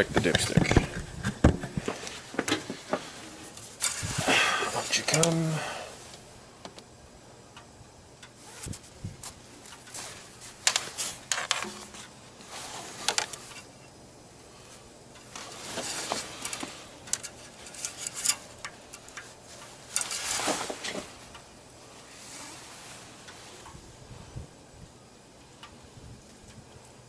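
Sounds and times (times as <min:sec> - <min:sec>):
scraping and rustling: 0:01.6 - 0:05.4, 0:08.4 - 0:14.0, 0:14.6 - 0:23.8.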